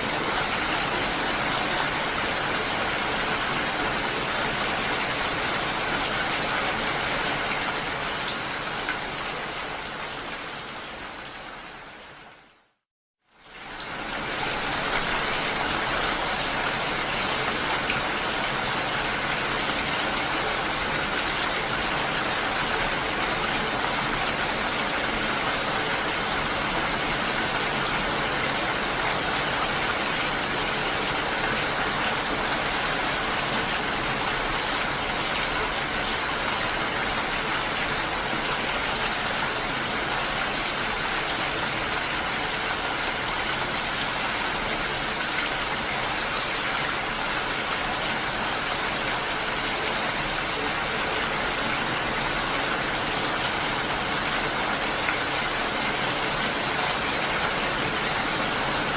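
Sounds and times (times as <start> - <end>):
steady rain falling: 0.0 - 58.9.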